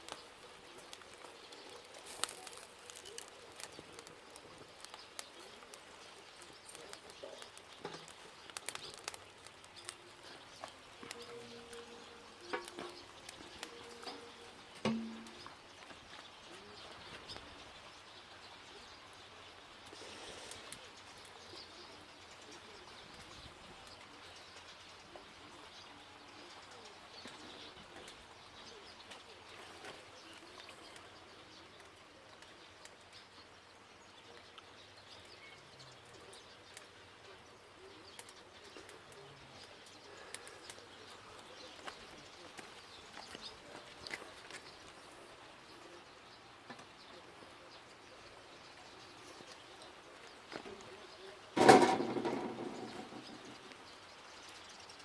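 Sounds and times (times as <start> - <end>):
meat sizzling on a grill: 0.0 - 15.9
fire crackling and popping: 0.0 - 24.8, 36.1 - 45.8, 46.7 - 55.0.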